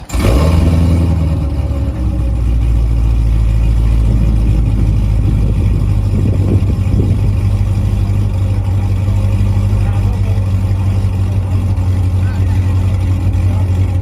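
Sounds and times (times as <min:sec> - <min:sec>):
car engine idling: 0:00.0 - 0:14.0.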